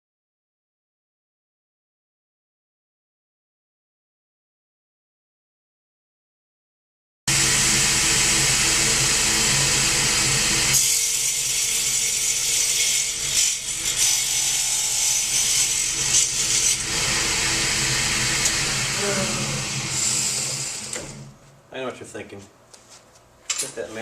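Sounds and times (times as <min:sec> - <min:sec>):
table saw blade whirring: 0:07.3 - 0:21.4
motor hum: 0:07.3 - 0:21.6.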